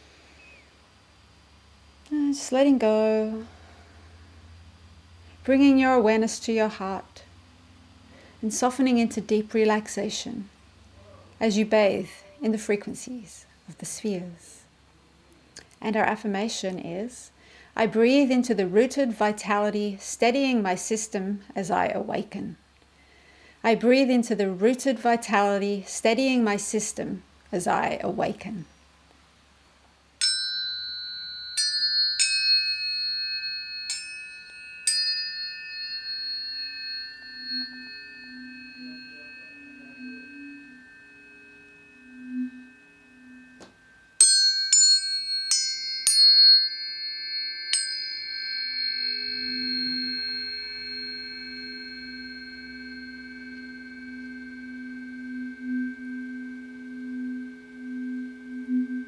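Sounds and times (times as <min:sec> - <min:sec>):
low steady hum: 0:00.0 - 0:59.0
tuning forks ringing: 0:30.2 - 0:59.0.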